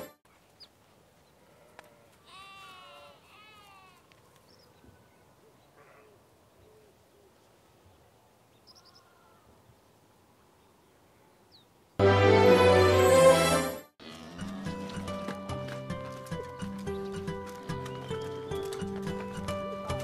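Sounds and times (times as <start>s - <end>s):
faint wavering animal calls: 4.7s - 7.4s, 8.7s - 9.6s.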